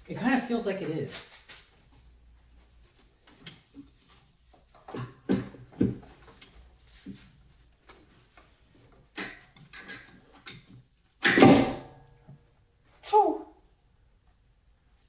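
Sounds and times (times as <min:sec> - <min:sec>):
knocks and clunks of car parts: 0:04.8 - 0:06.4, 0:11.2 - 0:12.0.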